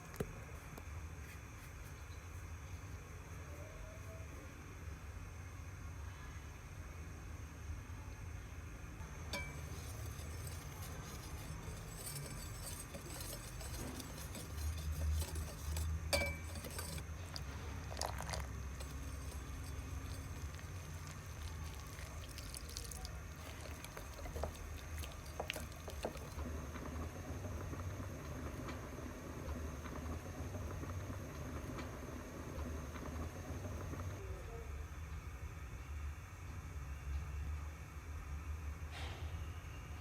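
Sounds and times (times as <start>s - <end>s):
steady low hum: 8.4s - 28.1s
dishes and utensils clinking: 9.3s - 26.4s.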